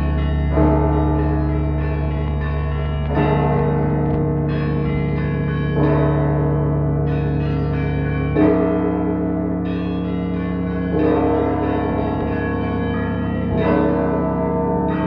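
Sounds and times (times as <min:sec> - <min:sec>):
deep church bell striking: 0:00.0 - 0:15.0.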